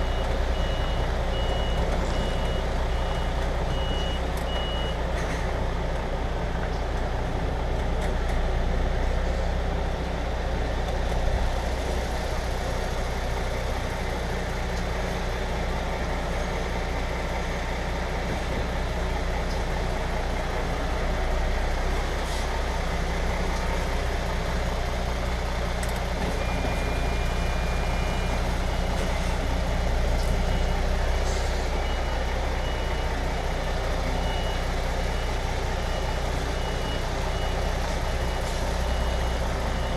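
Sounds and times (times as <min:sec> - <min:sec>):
reversing alarm beeping: 0:00.0 - 0:05.0, 0:31.5 - 0:39.9
diesel lorry engine running: 0:00.0 - 0:39.9.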